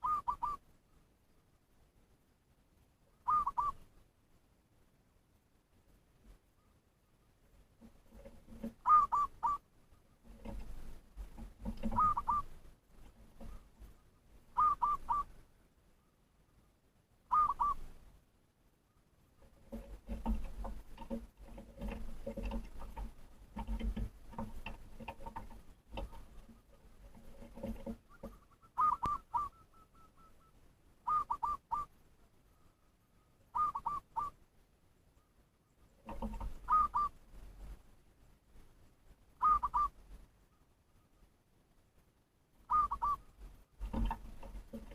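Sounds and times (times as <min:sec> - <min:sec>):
bird whistling short notes: 0:00.0 - 0:00.6, 0:03.2 - 0:03.8, 0:08.8 - 0:09.6, 0:12.0 - 0:12.5, 0:14.6 - 0:15.3, 0:17.3 - 0:17.8, 0:28.1 - 0:31.9, 0:33.5 - 0:34.3, 0:36.7 - 0:37.1, 0:39.4 - 0:39.9, 0:42.7 - 0:43.2.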